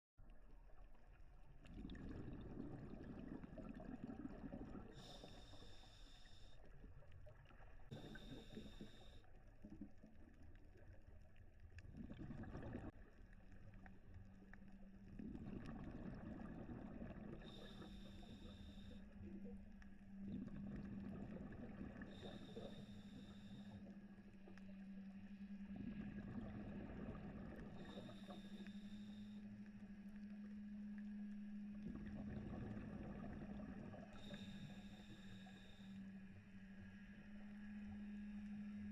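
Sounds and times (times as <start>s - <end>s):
steady low hum: 0.3s - 9.5s, 12.3s - 38.9s
bubbling exhale: 1.6s - 6.6s, 7.9s - 9.2s, 15.2s - 19.2s, 20.3s - 24.0s, 25.8s - 29.4s
regulator breathing hiss: 5.0s - 6.5s, 8.0s - 9.2s, 17.4s - 19.1s, 22.2s - 23.9s, 27.8s - 29.4s, 34.2s - 36.0s.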